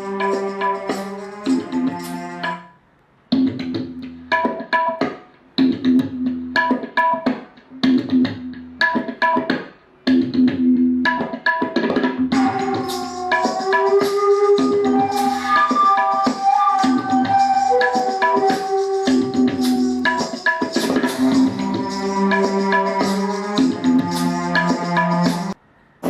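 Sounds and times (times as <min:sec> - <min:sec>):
plucked percussive music: 0:00.0 - 0:02.7, 0:10.2 - 0:25.6
long held notes: 0:12.3 - 0:25.6.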